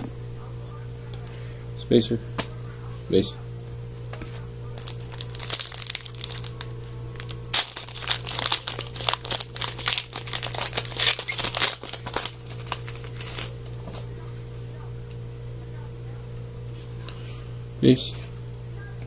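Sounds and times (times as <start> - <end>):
low electrical hum: 0.0 - 19.0
foil wrapper tearing and crinkling: 4.8 - 13.8.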